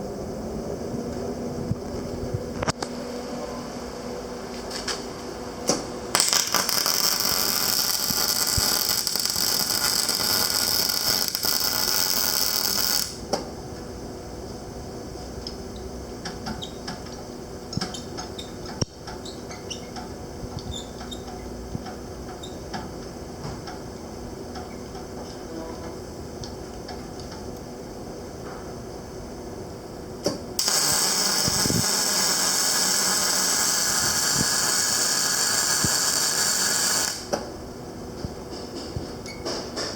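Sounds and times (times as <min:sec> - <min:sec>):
welder machine humming: 0:05.7 - 0:13.4, 0:30.3 - 0:37.4
welding arc hissing and crackling: 0:06.1 - 0:13.4, 0:30.6 - 0:37.4.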